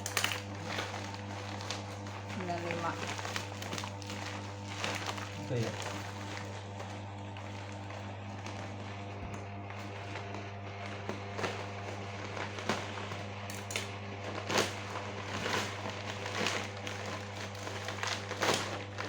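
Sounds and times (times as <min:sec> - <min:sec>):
plastic snack packet crinkling: 0:00.0 - 0:06.6, 0:14.3 - 0:19.0.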